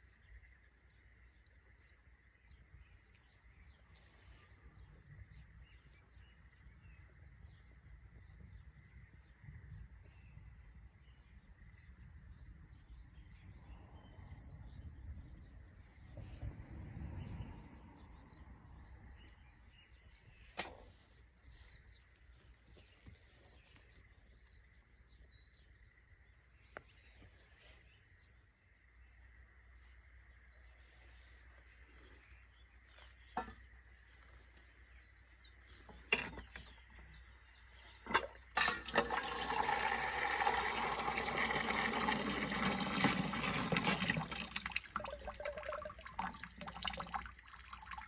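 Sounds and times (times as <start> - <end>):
small birds chirping: 18.0 - 38.5, 41.9 - 48.0.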